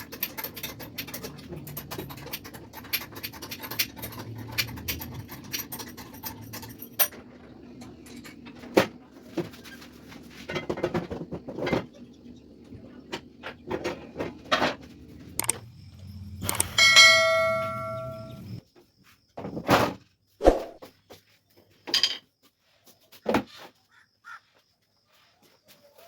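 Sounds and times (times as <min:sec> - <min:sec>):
low hum: 0:14.1 - 0:18.6
sharp metallic strike ringing: 0:16.5 - 0:18.6.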